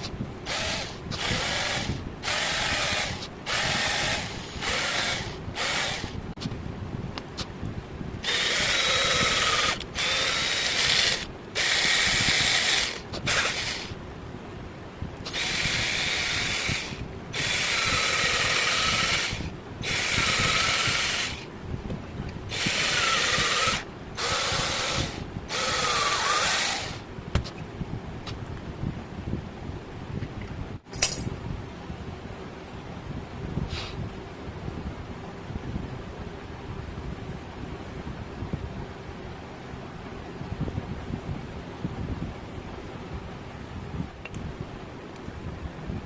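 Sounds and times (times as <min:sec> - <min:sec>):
power drill running in bursts: 0:00.5 - 0:06.2, 0:08.2 - 0:14.0, 0:15.2 - 0:21.4, 0:22.5 - 0:27.0.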